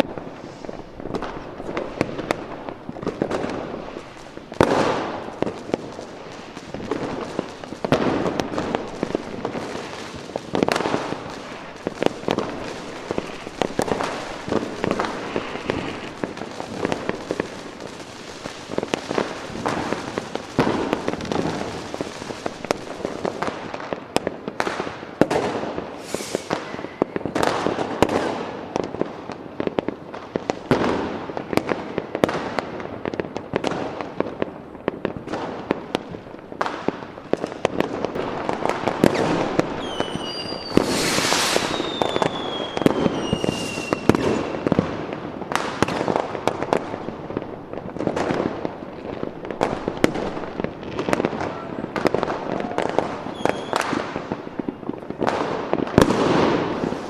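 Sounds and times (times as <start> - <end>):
fireworks bangs and crackling: 0.0 - 57.0
falling firework whistles: 0.2 - 0.9, 12.6 - 16.8, 25.9 - 28.5, 39.0 - 44.8, 52.5 - 54.1.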